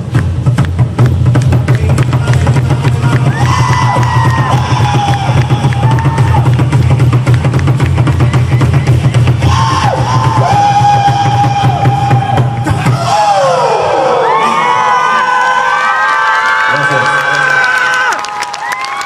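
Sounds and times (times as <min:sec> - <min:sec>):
fast drumming on deep drums: 0:00.0 - 0:13.4.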